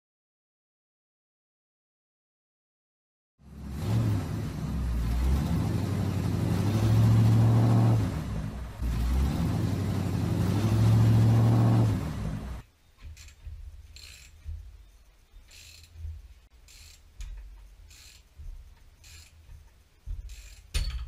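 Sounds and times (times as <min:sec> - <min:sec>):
vehicle engine running: 0:03.4 - 0:12.6.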